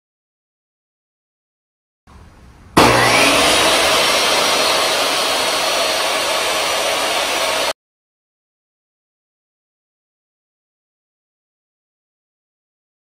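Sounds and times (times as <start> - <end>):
table saw whining: 2.8 - 7.8.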